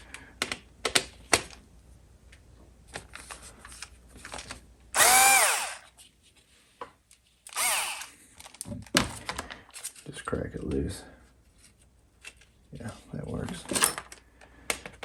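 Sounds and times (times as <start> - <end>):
cordless drill whining: 5.0 - 5.9, 7.5 - 8.2.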